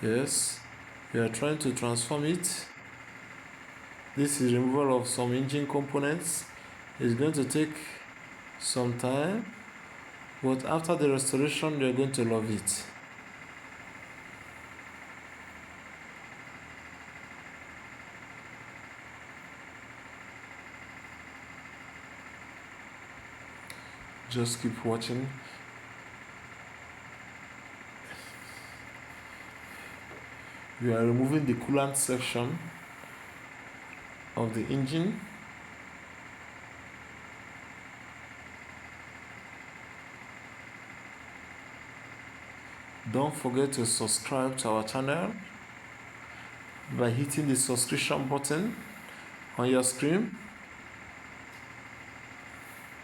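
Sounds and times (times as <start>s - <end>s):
steady mechanical hum: 0.0s - 53.0s.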